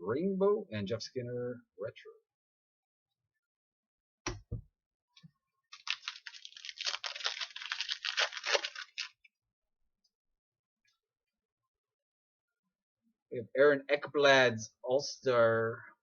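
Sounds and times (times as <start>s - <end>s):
wrapper crinkling and tearing: 5.7s - 9.2s.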